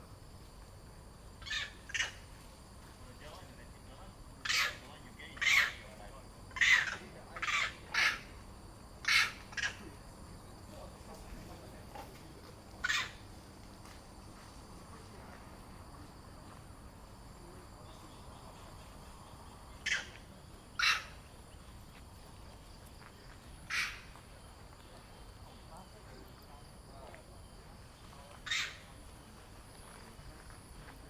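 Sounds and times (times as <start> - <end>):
faint steady background noise: 0.0 - 31.0
short sharp animal calls: 9.0 - 9.8, 19.8 - 21.2, 23.7 - 24.1.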